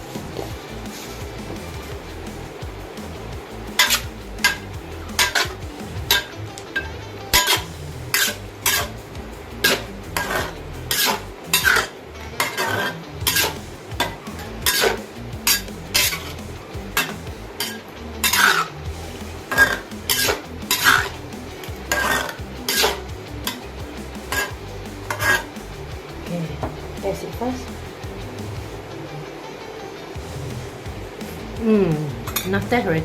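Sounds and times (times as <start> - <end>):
utensil scraping and clinking pot: 7.4 - 8.9, 9.6 - 14.1, 14.7 - 16.4, 17.0 - 18.7, 21.9 - 23.6.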